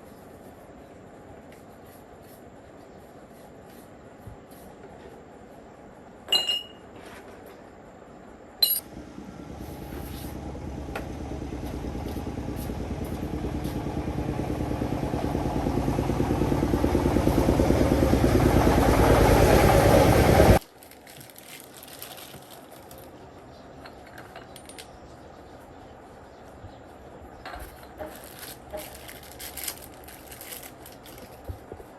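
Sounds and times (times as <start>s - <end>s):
metallic clinks: 8.6s - 8.9s
machine motor pulsing: 8.9s - 20.6s.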